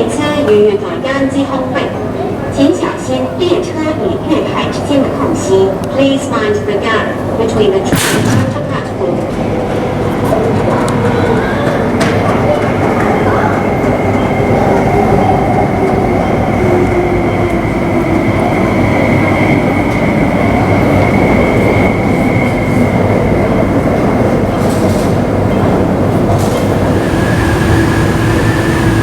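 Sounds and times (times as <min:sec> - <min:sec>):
train wheels rumbling on track: 0:01.5 - 0:29.0
traction motor whine: 0:26.7 - 0:29.0.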